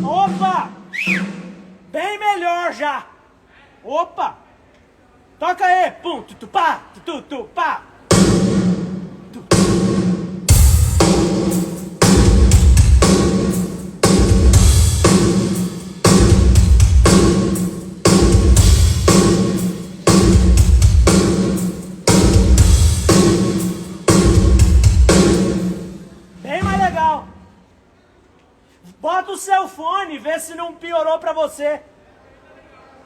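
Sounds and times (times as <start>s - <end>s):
drum kit groove through speakers: 0.0s - 1.9s, 8.1s - 27.4s
heavy kick drum hits: 9.5s - 25.8s.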